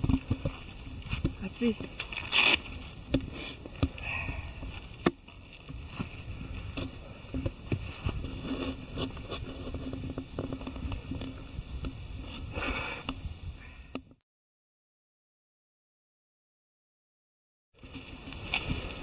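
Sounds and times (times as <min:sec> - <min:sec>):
footsteps on a trail: 0:00.0 - 0:11.2, 0:17.8 - 0:19.0
wind rumble on microphone: 0:00.0 - 0:14.2, 0:17.8 - 0:19.0.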